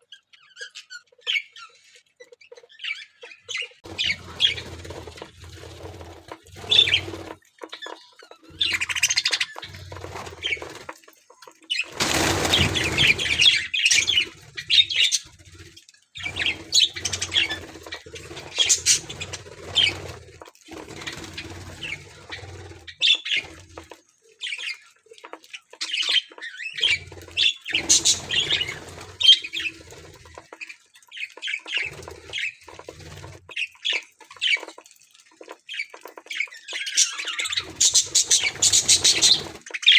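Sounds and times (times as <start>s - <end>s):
wing flapping: 3.8s - 7.5s, 8.5s - 24.0s, 26.8s - 30.7s, 37.0s - 39.9s
budgerigars chirping: 18.6s - 19.9s, 26.0s - 29.7s, 37.0s - 39.9s.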